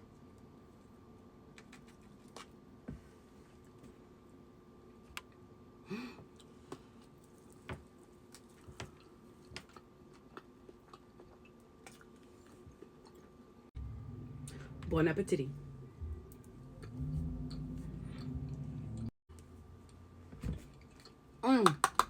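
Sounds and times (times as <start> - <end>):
chewing and mouth sounds: 8.2 - 13.4, 20.6 - 21.2.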